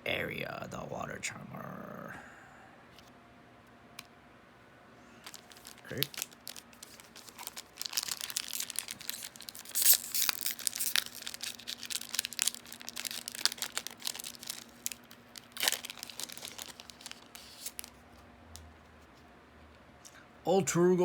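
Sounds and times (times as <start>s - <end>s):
foil wrapper crinkling and tearing: 5.2s - 18.1s.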